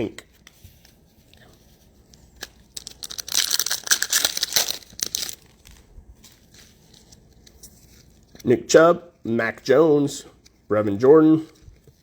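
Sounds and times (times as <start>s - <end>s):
foil wrapper crinkling and tearing: 2.4s - 8.2s.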